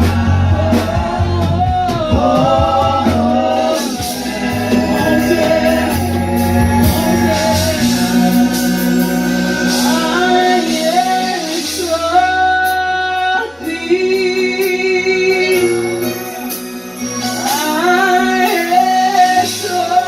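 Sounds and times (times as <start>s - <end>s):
woman and man singing: 0.0s - 16.4s, 17.2s - 20.0s
worship band playing: 0.0s - 20.0s.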